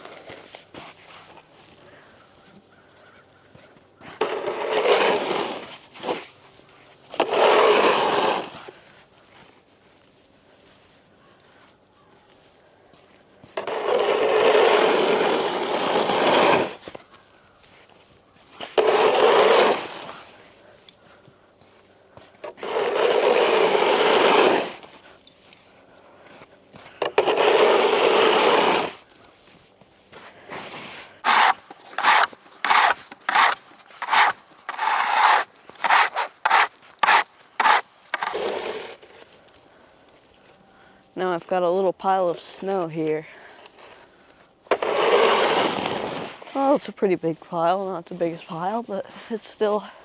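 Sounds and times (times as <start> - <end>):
snow shovel scraping on ice: 4.2 - 6.2, 7.2 - 8.6, 13.6 - 16.8, 18.8 - 20.1, 22.6 - 24.8, 27.2 - 28.9, 31.2 - 38.6, 44.8 - 46.3.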